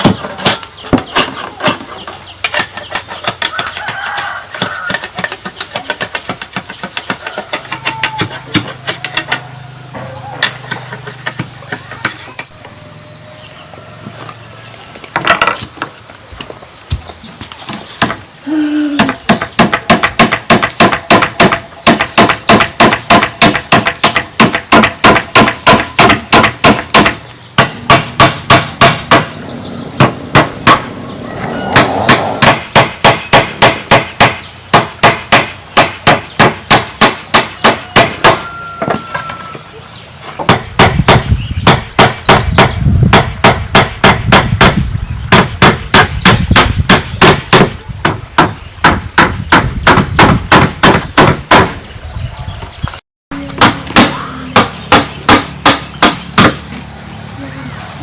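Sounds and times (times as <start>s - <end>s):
hammer striking bamboo: 2.4s - 9.5s, 19.0s - 29.4s, 30.0s - 30.9s, 31.8s - 39.1s, 40.4s - 51.8s, 53.4s - 56.7s.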